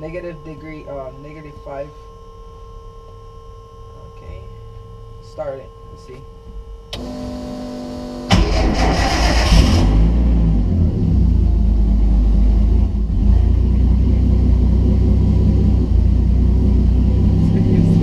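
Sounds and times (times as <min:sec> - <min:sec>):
steady hum: 0:00.0 - 0:18.0
car engine starting and idling: 0:06.9 - 0:18.0.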